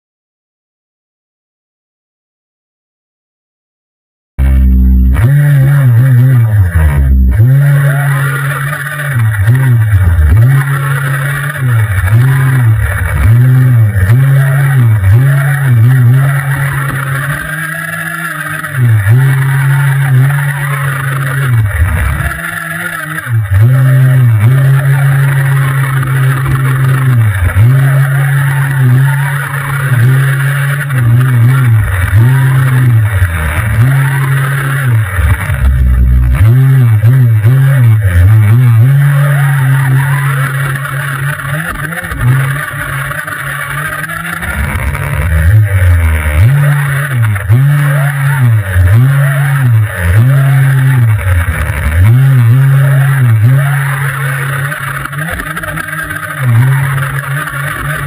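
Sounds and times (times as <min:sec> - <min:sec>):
rc car motor revving: 0:04.4 - 0:58.0.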